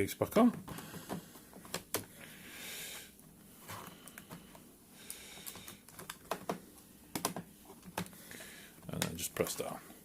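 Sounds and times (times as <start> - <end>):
plastic laptop case clicking: 1.0 - 2.1, 5.4 - 8.2.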